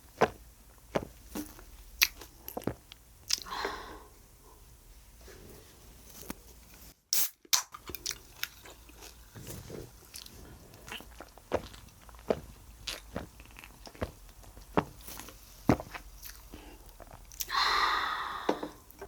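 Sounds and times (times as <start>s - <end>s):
person chewing and biting: 0.2s - 3.5s, 7.2s - 17.5s.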